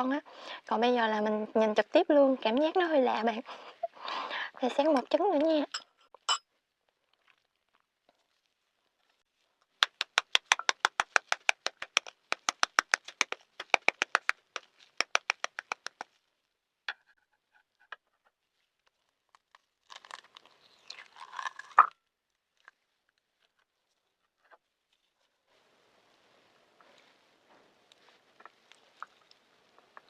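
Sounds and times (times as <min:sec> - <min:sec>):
shell crackling: 0:09.8 - 0:16.0
eggshell being tapped: 0:09.8 - 0:16.1.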